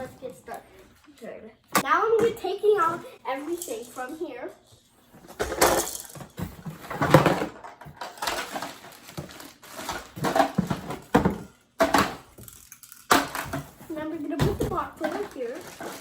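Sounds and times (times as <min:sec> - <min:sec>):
rustles and knocks of packaging: 0:05.2 - 0:12.2, 0:13.1 - 0:16.0.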